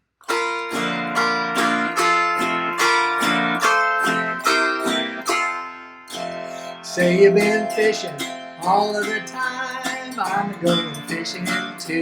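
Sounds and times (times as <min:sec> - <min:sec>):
autoharp strumming blues chords: 0:00.2 - 0:12.0.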